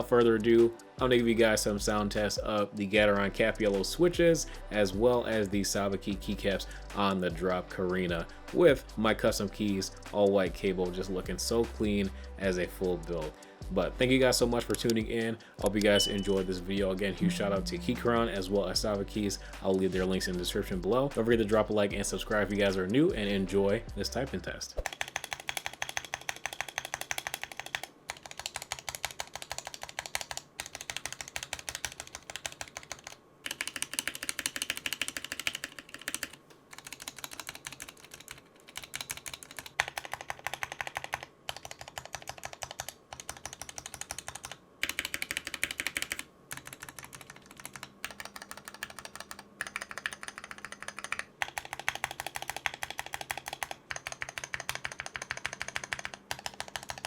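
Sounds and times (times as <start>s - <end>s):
mechanical keyboard typing: 24.8s - 57.0s.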